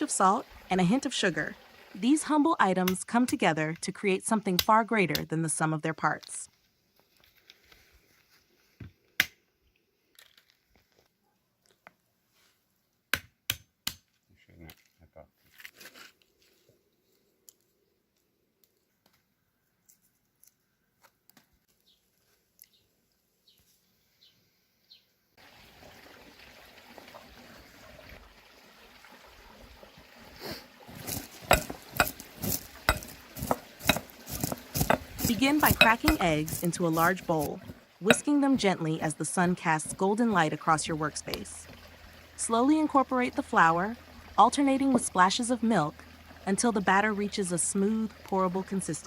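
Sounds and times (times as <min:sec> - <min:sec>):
soft trickling pouring: 0:25.4 - 0:38.1, 0:41.6 - 0:42.4
utensil clinking against bowl: 0:31.5 - 0:37.1, 0:38.1 - 0:38.3.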